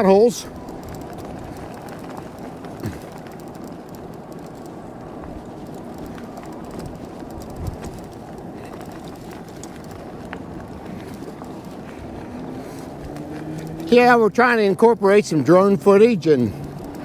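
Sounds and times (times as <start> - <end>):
tyres rumbling on rough pavement: 0.0 - 17.0
wind on microphone: 5.0 - 13.9.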